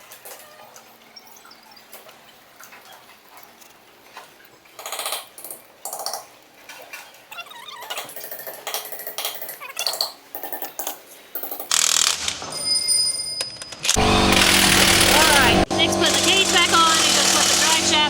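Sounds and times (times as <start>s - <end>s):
impact wrench rattling bursts: 11.4s - 12.4s, 13.8s - 18.0s.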